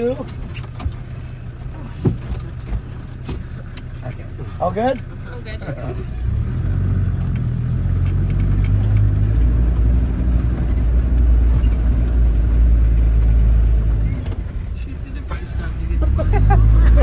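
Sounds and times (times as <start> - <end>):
car engine rumbling under load: 0.0 - 17.0.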